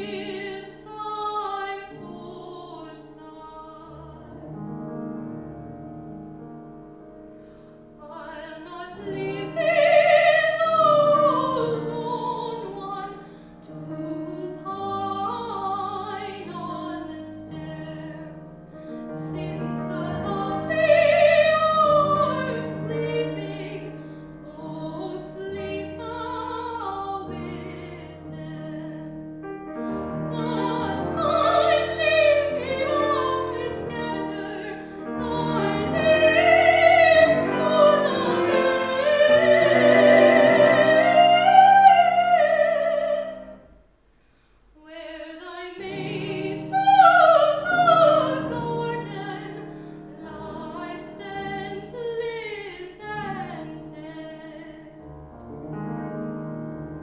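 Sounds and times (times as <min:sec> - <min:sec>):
piano chords: 0:00.0 - 0:44.1, 0:45.1 - 0:57.0
operatic solo singing: 0:30.3 - 0:43.6.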